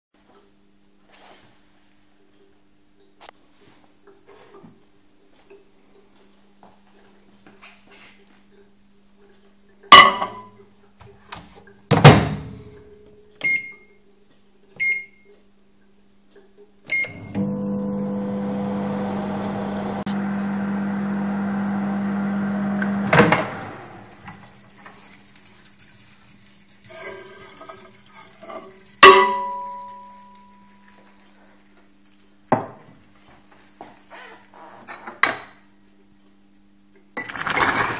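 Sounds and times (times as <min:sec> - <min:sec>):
short keypad beeps: 0:13.4 - 0:14.0, 0:14.8 - 0:15.3
microwave oven humming: 0:16.8 - 0:25.2, 0:28.3 - 0:36.0.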